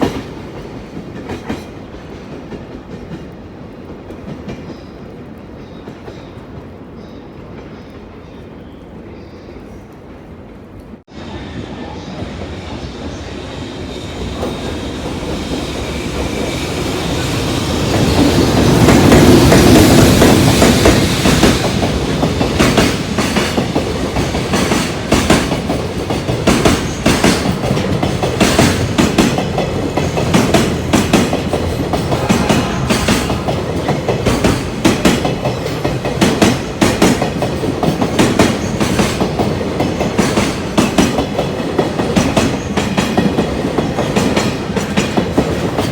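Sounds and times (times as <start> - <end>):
freight train passing: 0.0 - 45.9
wheels clacking over rail joints: 14.4 - 45.9.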